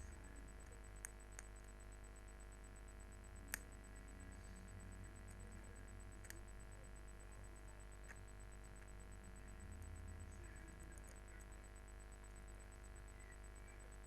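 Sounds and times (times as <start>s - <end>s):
low steady hum: 0.0s - 14.0s
faint sharp clicks: 0.6s - 1.8s, 3.5s - 3.8s, 6.1s - 6.6s.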